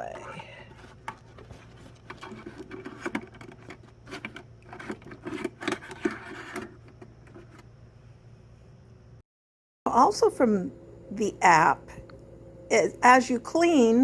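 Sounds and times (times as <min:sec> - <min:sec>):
low hum: 0:09.9 - 0:14.0.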